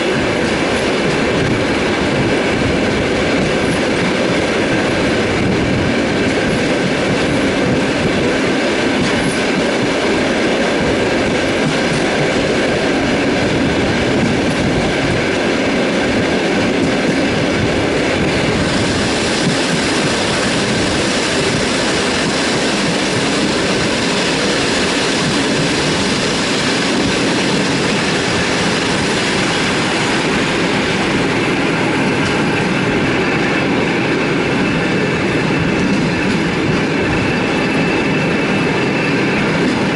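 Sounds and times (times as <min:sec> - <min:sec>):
train wheels rumbling on rails: 0:00.0 - 0:39.9.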